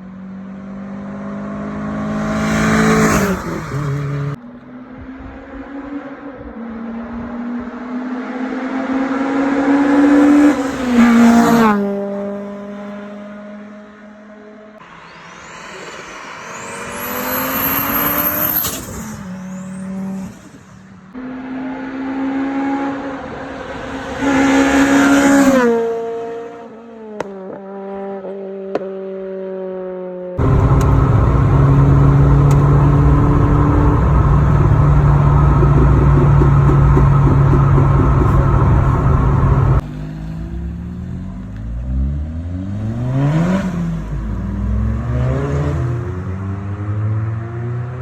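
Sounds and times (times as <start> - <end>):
rally car engines revving: 0.0 - 28.9, 30.4 - 48.0
engine pops: 30.4 - 39.8
steady engine drone: 30.4 - 39.9.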